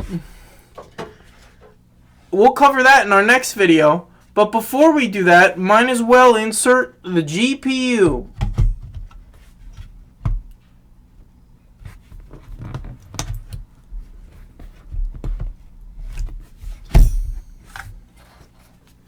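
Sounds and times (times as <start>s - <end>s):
loud thump: 16.9s - 17.5s.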